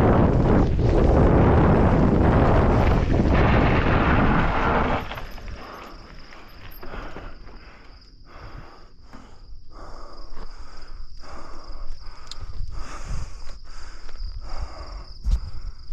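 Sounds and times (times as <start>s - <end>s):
low rumble: 0.0s - 7.2s
mountain bike rolling on dirt: 0.0s - 9.4s
high insect trill: 0.0s - 15.9s.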